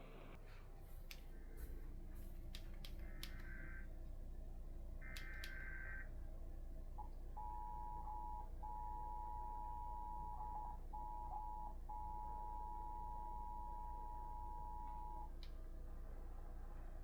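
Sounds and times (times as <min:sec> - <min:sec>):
low hum: 0:00.0 - 0:17.0
two-tone alert signal: 0:07.4 - 0:15.3.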